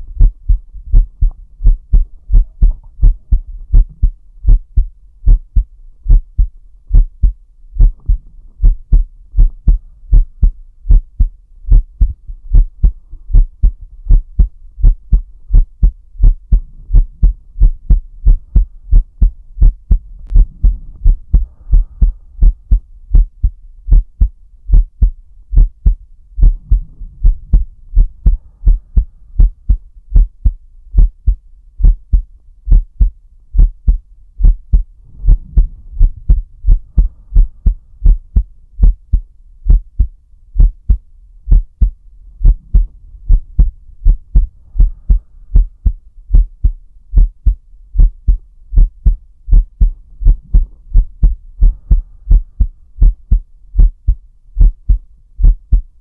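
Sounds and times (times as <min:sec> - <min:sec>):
heartbeat: 0:00.0 - 0:56.0
faint slow breathing: 0:12.0 - 0:13.8, 0:19.9 - 0:22.9, 0:26.4 - 0:29.9, 0:34.7 - 0:38.5, 0:41.8 - 0:46.5, 0:49.8 - 0:53.3.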